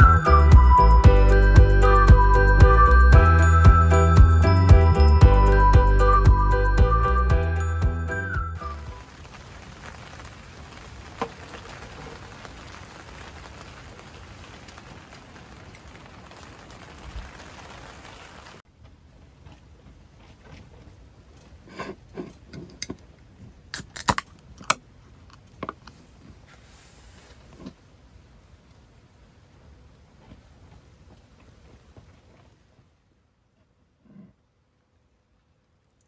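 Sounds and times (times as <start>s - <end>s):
steady rain hiss: 8.6s - 18.7s, 20.9s - 33.5s.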